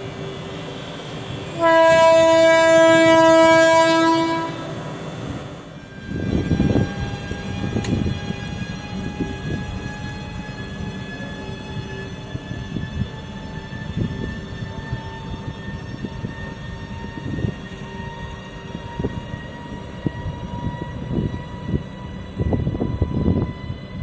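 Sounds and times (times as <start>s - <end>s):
train rumble: 0.0s - 24.0s
locomotive horn blast: 1.6s - 4.9s.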